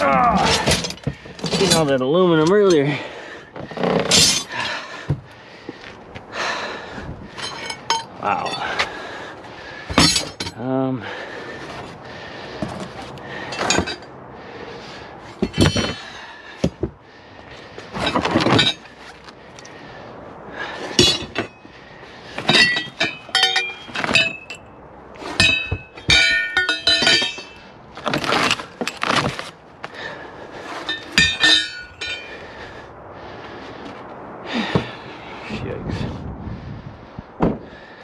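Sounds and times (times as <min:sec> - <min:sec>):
scrap metal clanking: 0:00.0 - 0:05.2, 0:07.3 - 0:09.0, 0:09.8 - 0:10.6, 0:12.6 - 0:14.2, 0:15.3 - 0:17.0, 0:17.8 - 0:19.2, 0:20.8 - 0:21.7, 0:22.3 - 0:24.6, 0:25.2 - 0:29.5, 0:30.5 - 0:32.6.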